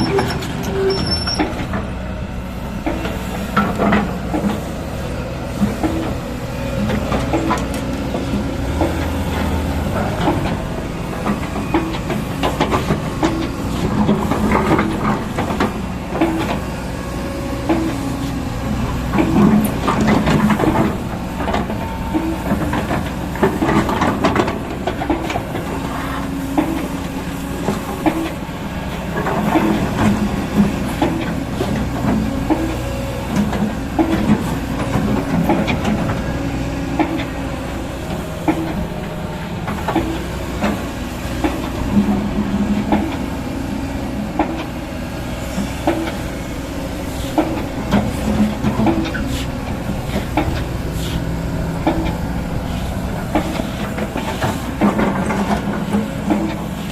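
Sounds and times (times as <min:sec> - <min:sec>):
machine clanking and clattering: 0:00.0 - 0:01.9, 0:05.6 - 0:16.7, 0:17.6 - 0:56.9
excavator diesel engine running: 0:00.0 - 0:56.9.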